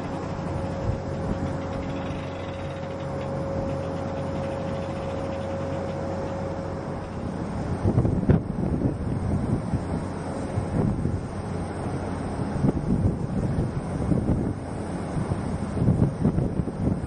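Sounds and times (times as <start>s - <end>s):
machinery whine: 0.0s - 12.8s
machinery low hum: 0.0s - 17.0s.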